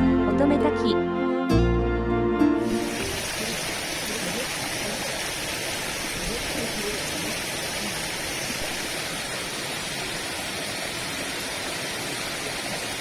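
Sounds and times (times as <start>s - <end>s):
waterfall rushing: 2.6s - 13.0s.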